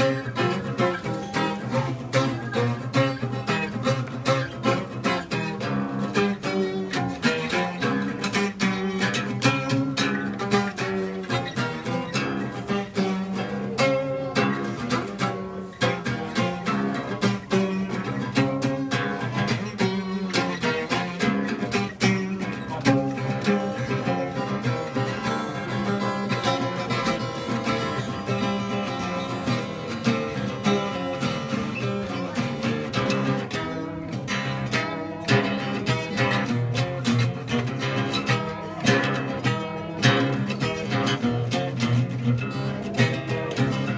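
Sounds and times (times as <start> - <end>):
acoustic guitar: 0.0 - 43.9
plucked string notes: 0.0 - 43.9.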